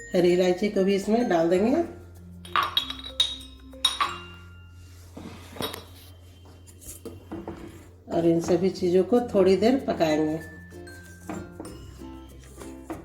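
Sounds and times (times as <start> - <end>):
spoon clinking against pan: 2.4 - 4.5.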